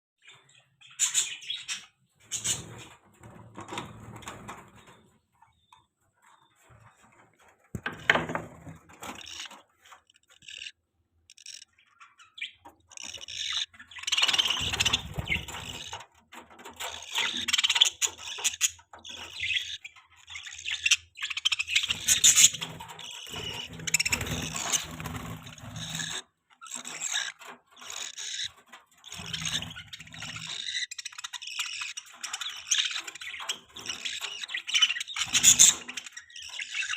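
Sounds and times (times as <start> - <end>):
budgerigars chirping: 0.2 - 2.9, 9.0 - 9.6, 10.2 - 16.0, 16.8 - 36.9.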